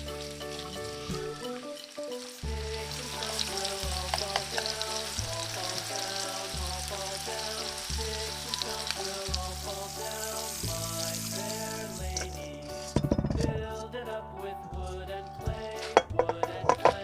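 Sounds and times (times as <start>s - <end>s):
food sizzling in frying pan: 0.0s - 13.0s
instrumental background music: 0.0s - 17.0s.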